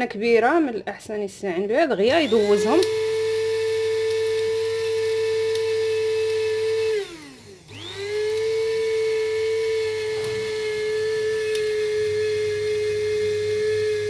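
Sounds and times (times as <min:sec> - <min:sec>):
spice grinder motor whining: 0:02.1 - 0:14.0.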